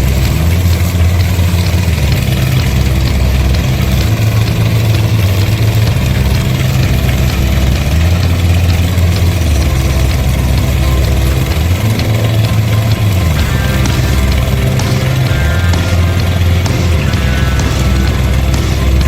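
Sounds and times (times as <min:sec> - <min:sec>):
lawn mower engine running: 0:00.0 - 0:19.0.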